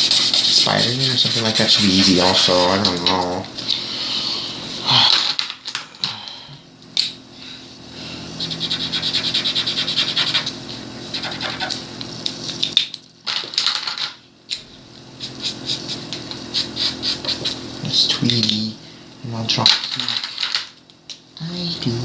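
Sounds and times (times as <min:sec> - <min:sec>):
pen scribbling on paper: 0:00.0 - 0:02.9, 0:08.4 - 0:11.8, 0:15.2 - 0:17.6.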